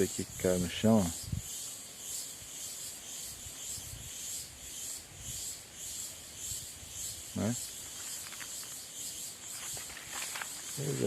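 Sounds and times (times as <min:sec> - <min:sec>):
cicadas singing: 0:00.0 - 0:11.0.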